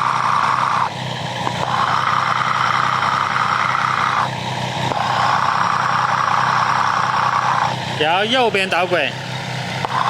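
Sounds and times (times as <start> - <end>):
engine idling through stethoscope: 0.0 - 10.0.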